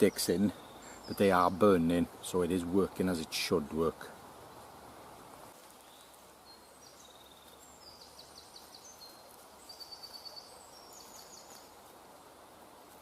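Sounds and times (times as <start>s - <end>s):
songbird singing: 0.0s - 13.0s.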